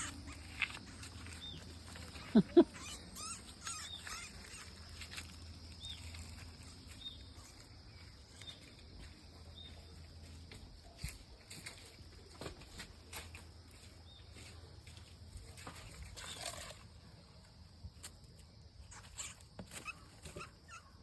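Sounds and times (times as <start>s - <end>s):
mouse squeaking: 0.0s - 5.2s, 18.9s - 21.0s.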